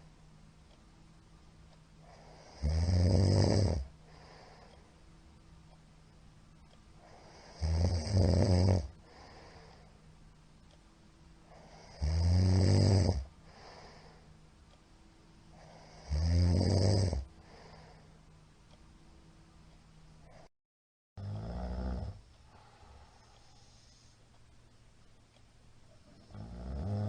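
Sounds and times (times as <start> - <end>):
man snoring loudly: 2.4 - 3.9, 7.3 - 8.9, 11.7 - 13.3, 15.8 - 17.3, 21.2 - 22.2, 26.3 - 27.0.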